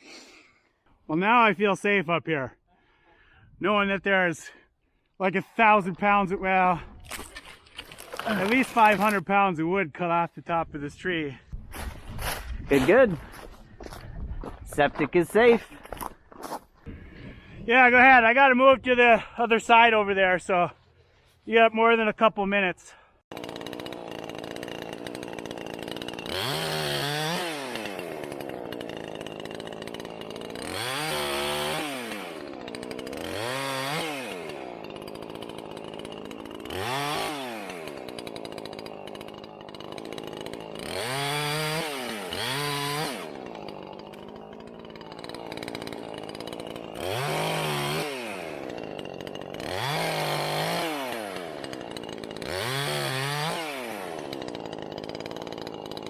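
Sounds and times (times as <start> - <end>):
chainsaw revving and idling: 7.8 - 9.3, 23.0 - 56.0.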